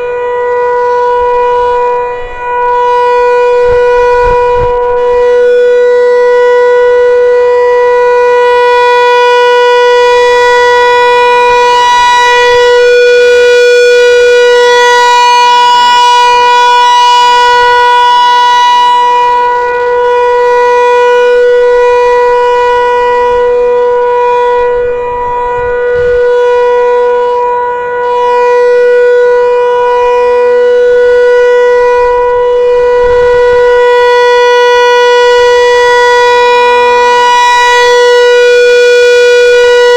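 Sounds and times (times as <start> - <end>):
steady warning siren wail: 0.0 - 39.9.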